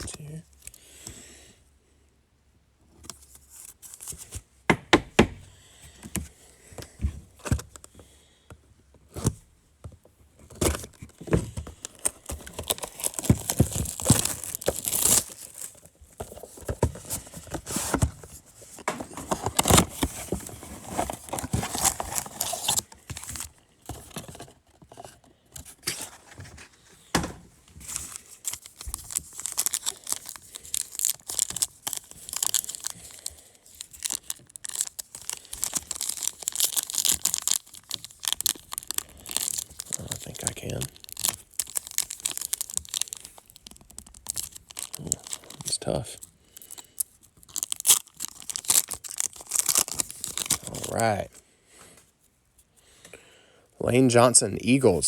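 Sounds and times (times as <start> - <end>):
wrappers tearing and crinkling: 10.8 - 18.1, 19.0 - 24.1, 27.8 - 51.3.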